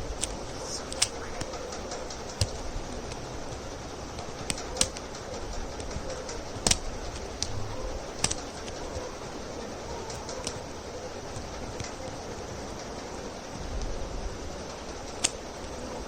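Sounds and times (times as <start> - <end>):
plastic cube pieces clicking: 0.0 - 3.2, 4.2 - 5.2, 5.8 - 12.2, 15.1 - 15.8
steady background hiss: 0.0 - 16.0.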